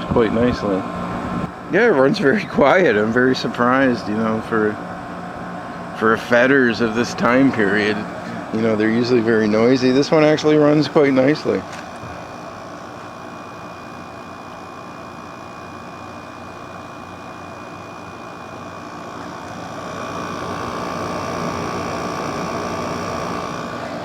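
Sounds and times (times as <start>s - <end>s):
air conditioner humming: 0.0s - 24.0s.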